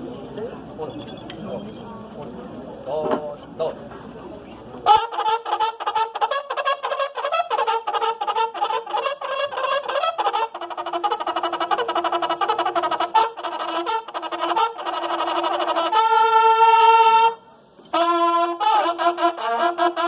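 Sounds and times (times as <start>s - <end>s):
bugles playing in harmony: 4.9s - 20.0s.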